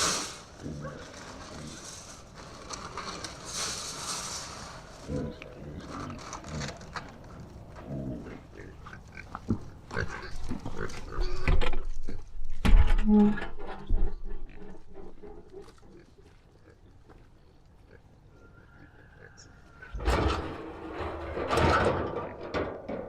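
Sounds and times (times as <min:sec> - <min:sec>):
pigs grunting: 0:00.0 - 0:04.0, 0:04.9 - 0:12.6, 0:13.3 - 0:20.5
knocks and clatter: 0:20.0 - 0:23.0.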